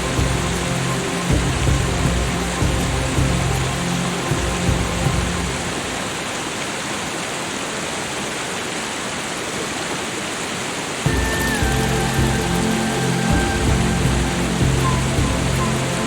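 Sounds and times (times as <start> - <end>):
background music: 0.0 - 6.9, 11.1 - 16.0
falling water rushing: 0.0 - 16.0.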